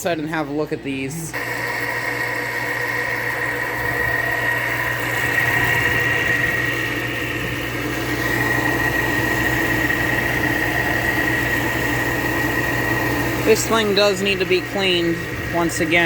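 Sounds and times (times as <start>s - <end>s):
compressor hum: 0.0s - 16.0s
fan noise: 0.0s - 16.0s
high whine: 1.3s - 16.0s.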